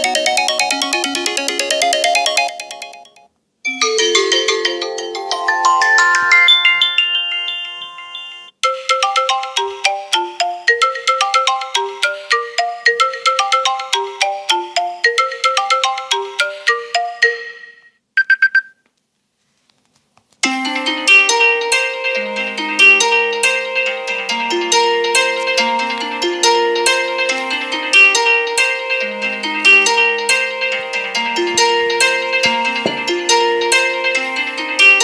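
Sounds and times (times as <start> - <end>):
phone ringtone chiming notes: 0.0 - 18.0.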